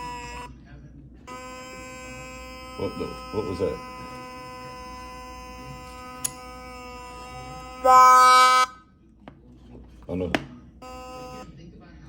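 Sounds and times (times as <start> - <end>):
siren steady tone: 7.4 - 8.8
loud harsh siren blast: 7.8 - 8.8.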